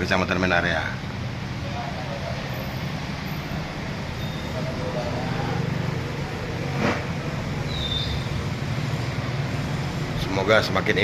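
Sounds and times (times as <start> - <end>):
faint voices: 3.5 - 8.3.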